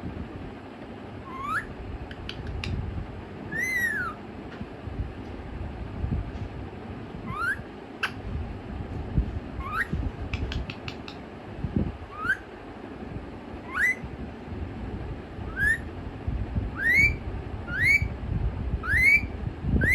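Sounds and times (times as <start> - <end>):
parrot whistling: 1.2 - 1.7, 3.5 - 4.2, 7.3 - 8.2, 9.6 - 11.2, 12.1 - 12.5, 13.6 - 14.0, 15.5 - 15.9, 16.8 - 18.1, 18.8 - 19.9.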